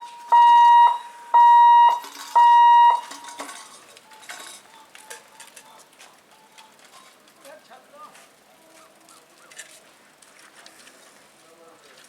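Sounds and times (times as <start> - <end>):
loud electronic beeps: 0.2 - 3.1.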